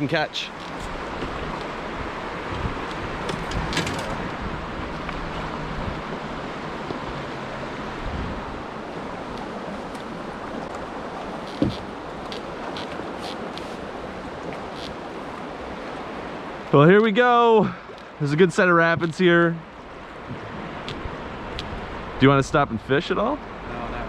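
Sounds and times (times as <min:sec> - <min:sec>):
wind on microphone: 0:07.9 - 0:08.6.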